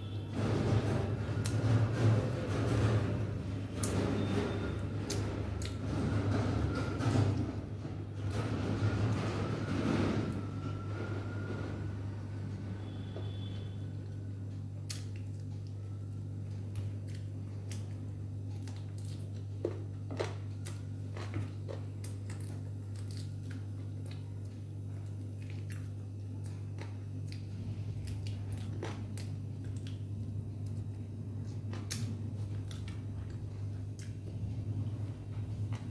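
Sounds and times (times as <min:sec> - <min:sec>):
person chewing: 0:05.1 - 0:05.8, 0:16.7 - 0:34.4.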